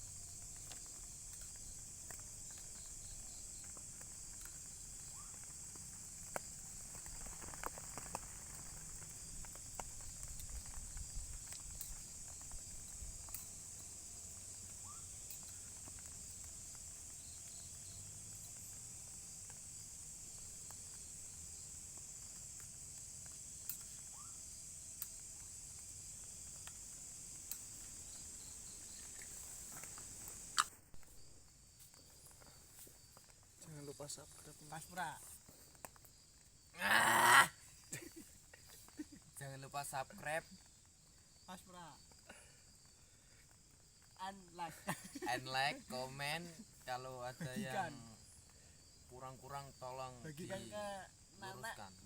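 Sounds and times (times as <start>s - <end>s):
crickets droning: 0.0s - 52.0s
light taps and ticks: 0.3s - 24.1s, 24.9s - 31.1s, 34.4s - 36.2s.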